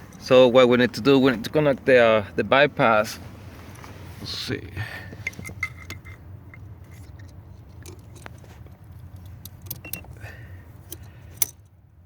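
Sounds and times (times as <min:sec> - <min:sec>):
low steady hum: 0:00.0 - 0:12.0
hands handling parts clicking: 0:05.1 - 0:10.2, 0:10.8 - 0:11.7.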